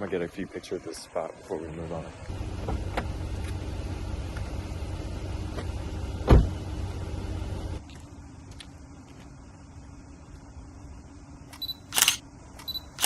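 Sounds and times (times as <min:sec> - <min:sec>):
car rumbling: 0:00.0 - 0:08.5.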